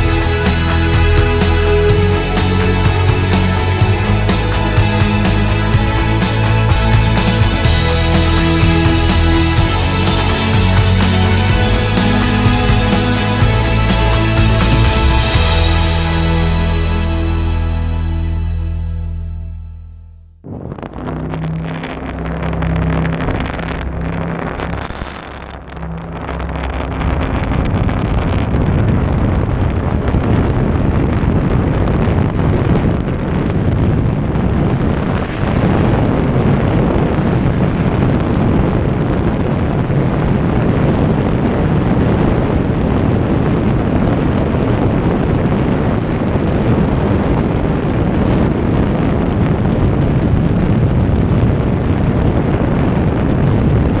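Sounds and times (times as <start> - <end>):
boat engine humming: 0.0 - 19.5
wind on microphone: 14.4 - 16.0, 20.5 - 54.0.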